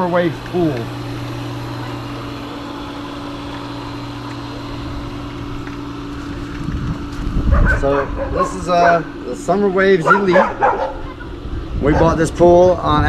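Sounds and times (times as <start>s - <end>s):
motor hum: 0.0s - 13.0s.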